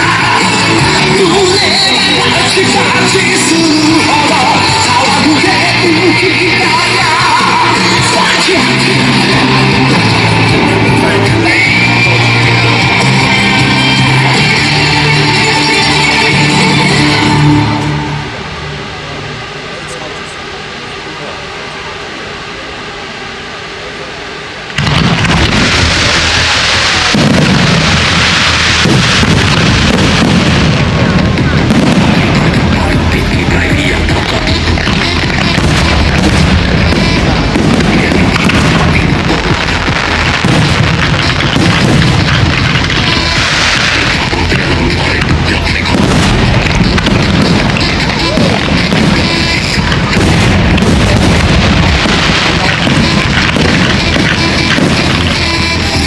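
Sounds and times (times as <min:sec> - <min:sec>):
music playing: 0:00.0 - 0:20.3, 0:24.8 - 0:56.0
fireworks booming and crackling: 0:00.0 - 0:56.0.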